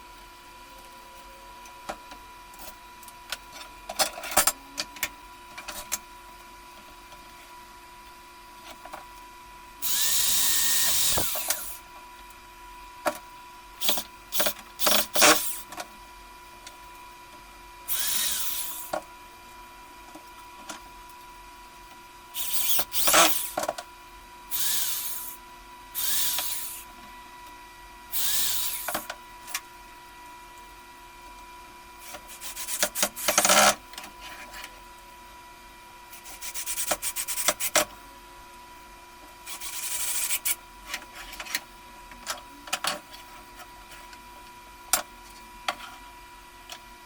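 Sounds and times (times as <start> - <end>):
power drill spinning: 9.8 - 11.8, 13.8 - 15.7, 17.9 - 19.0, 22.4 - 23.6, 24.5 - 25.4, 26.0 - 26.9, 28.1 - 29.0, 39.5 - 40.5.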